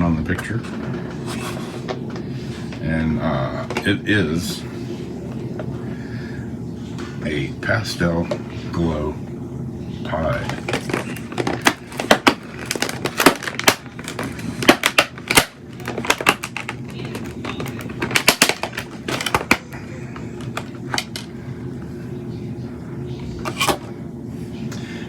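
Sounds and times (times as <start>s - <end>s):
packaging clicking and crackling: 10.4s - 19.7s.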